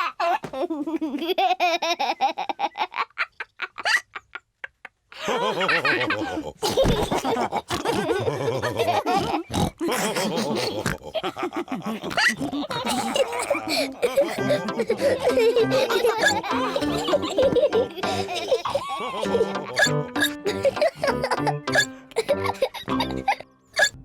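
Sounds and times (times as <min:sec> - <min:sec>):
cartoon pigs laughing: 0:00.0 - 0:24.0
piggy snorts: 0:07.6 - 0:11.2, 0:12.0 - 0:13.9, 0:19.8 - 0:20.4, 0:23.8 - 0:24.0.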